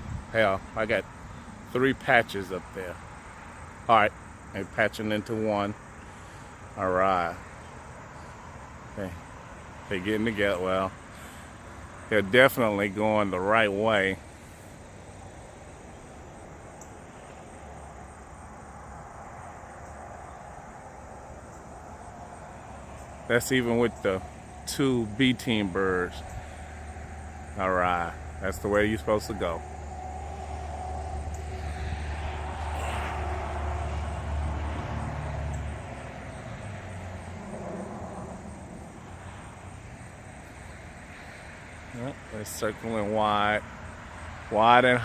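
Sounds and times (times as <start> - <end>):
outdoor background noise: 0.0 - 45.0
passing vehicle engine hum: 0.0 - 45.0.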